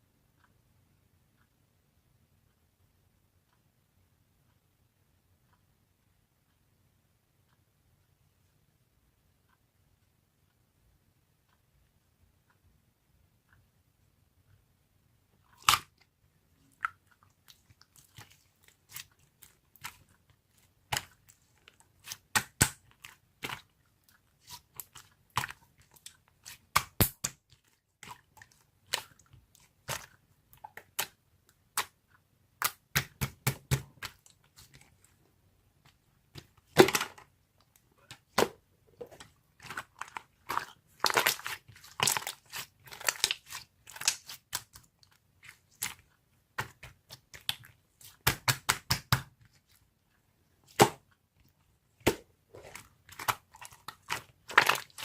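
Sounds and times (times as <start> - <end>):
crisp crunching and clicking: 52.1 - 55.0.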